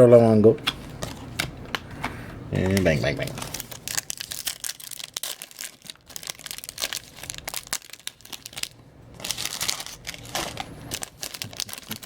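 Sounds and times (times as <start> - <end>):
foil wrapper crinkling and tearing: 2.7 - 12.0.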